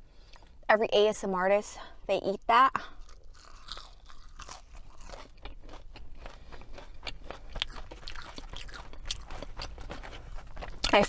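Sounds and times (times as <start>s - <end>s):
chewing crunchy food: 2.8s - 11.0s.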